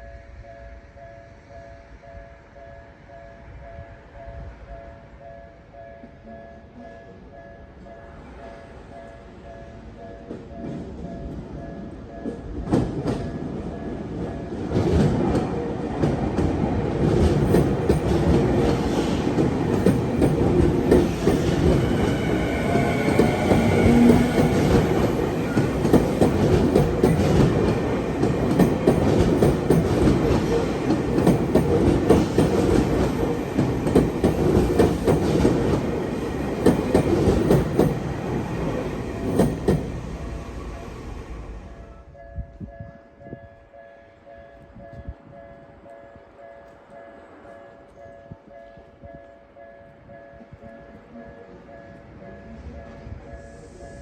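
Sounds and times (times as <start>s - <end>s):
train wheels clacking over rail joints: 12.2s - 40.0s.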